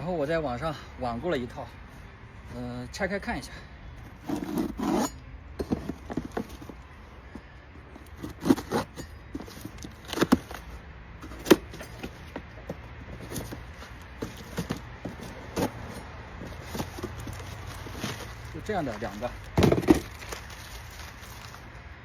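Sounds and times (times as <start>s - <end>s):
packaging rustling: 13.2s - 21.8s.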